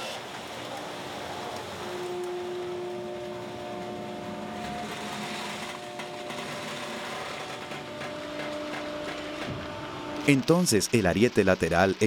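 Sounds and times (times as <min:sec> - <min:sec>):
baler mechanical hum: 0:00.2 - 0:12.0
ram whine: 0:01.9 - 0:12.0.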